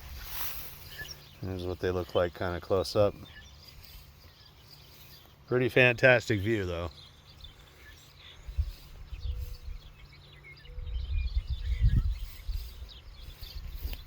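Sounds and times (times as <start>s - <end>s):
faint bird chirps: 0.3s - 14.0s
wind gusts on microphone: 8.4s - 14.0s.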